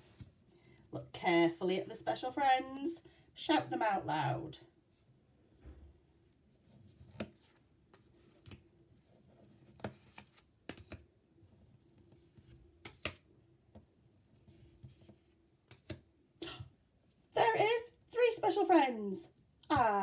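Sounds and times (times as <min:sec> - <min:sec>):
small clicks and taps: 0:14.9 - 0:16.1.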